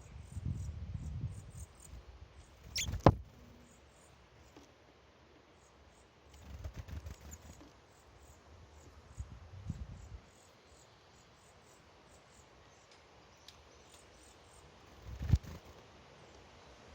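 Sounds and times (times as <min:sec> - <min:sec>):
faint high chirps: 0:02.6 - 0:03.8.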